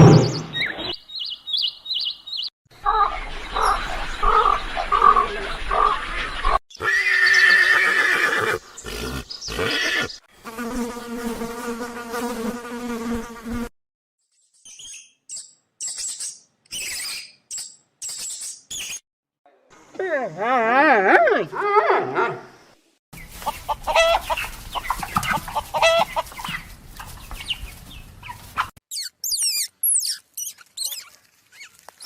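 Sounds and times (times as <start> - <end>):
high buzzy chirps: 28.9 - 31.1.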